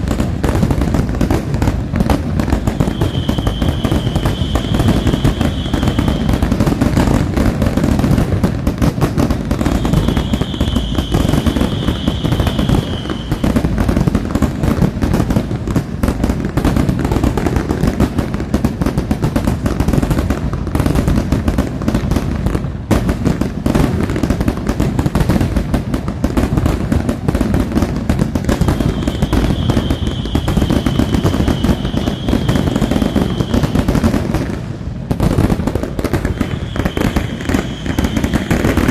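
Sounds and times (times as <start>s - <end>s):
fireworks bangs and crackling: 0.0s - 38.9s
high whistle: 2.7s - 6.4s, 9.6s - 13.7s, 28.6s - 33.8s, 36.2s - 38.9s.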